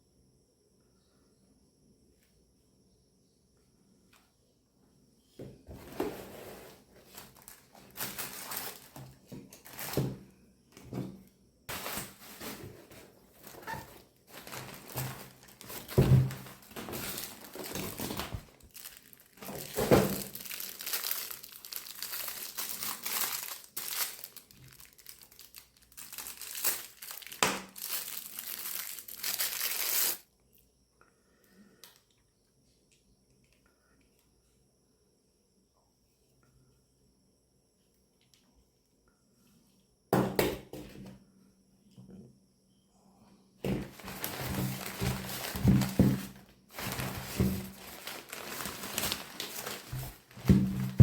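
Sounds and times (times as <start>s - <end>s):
packaging crinkling and rustling: 5.7s - 10.2s, 11.7s - 30.2s, 43.7s - 51.0s
packaging tearing: 7.1s - 10.0s, 13.4s - 30.2s, 43.9s - 51.0s.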